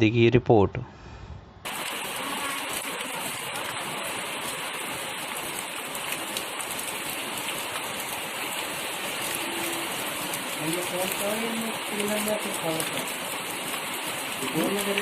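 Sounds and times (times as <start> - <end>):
steady rain falling: 1.6 - 15.0.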